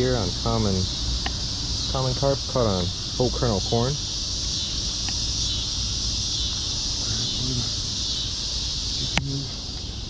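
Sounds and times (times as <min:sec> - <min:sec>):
low rumble: 0:00.0 - 0:08.0
insect chorus drone: 0:00.0 - 0:10.0.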